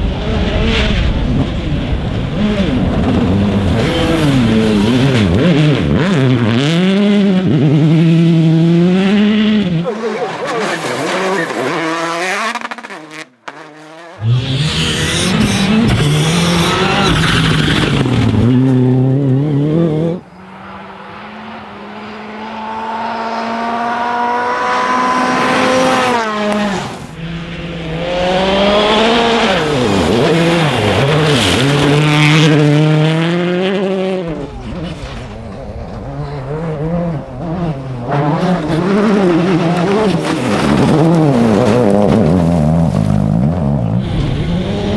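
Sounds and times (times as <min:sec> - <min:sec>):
rally car engines revving: 0:00.0 - 0:44.9.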